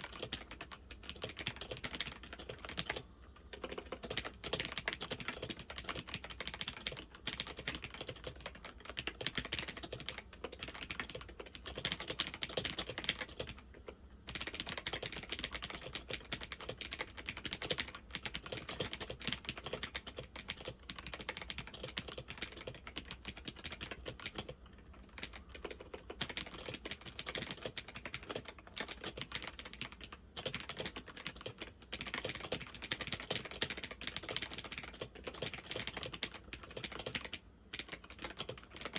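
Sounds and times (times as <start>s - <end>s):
laptop keyboard typing: 0.0s - 38.9s.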